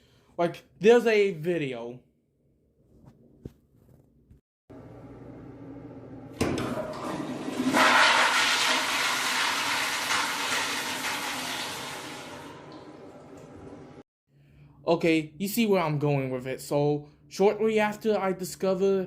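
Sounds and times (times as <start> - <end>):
toilet flushing: 6.2 - 14.0.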